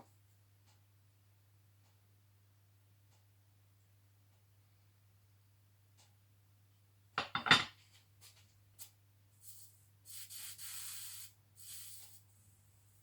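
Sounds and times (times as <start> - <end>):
faint mains hum: 0.0 - 13.0
soldering iron sizzling: 9.4 - 13.0.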